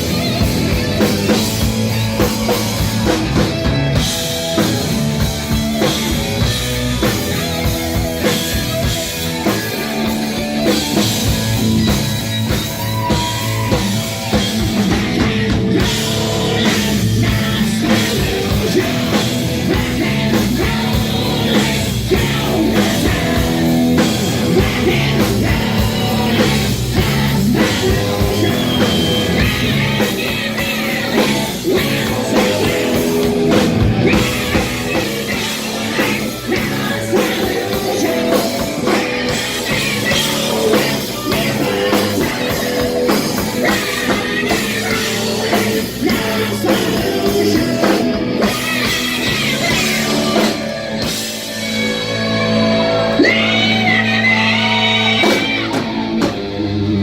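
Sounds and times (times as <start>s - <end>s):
live rock band playing: 0.0s - 57.0s
person singing: 12.5s - 51.2s, 52.6s - 56.4s.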